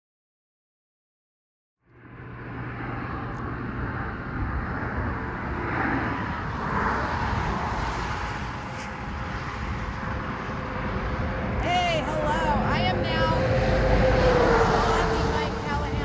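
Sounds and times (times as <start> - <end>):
highway traffic passing: 1.8 - 16.0.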